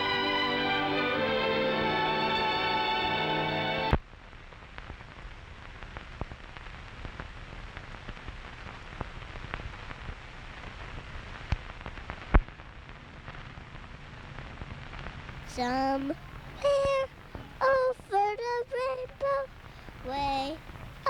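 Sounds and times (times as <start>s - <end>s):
soft crackling hiss: 15.4s - 21.0s.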